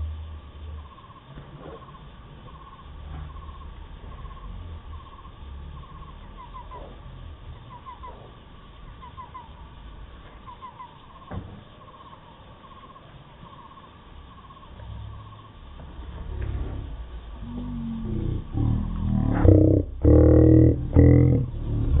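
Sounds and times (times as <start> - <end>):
low steady rumble: 0.0 - 22.0
short chirping calls: 0.8 - 7.0, 7.6 - 8.3, 8.9 - 9.7, 10.4 - 15.6.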